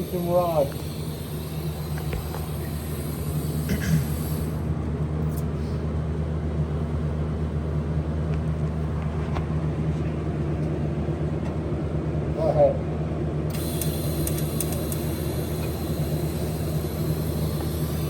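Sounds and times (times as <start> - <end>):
low motor hum: 0.0 - 18.0
light clicks: 13.8 - 15.0.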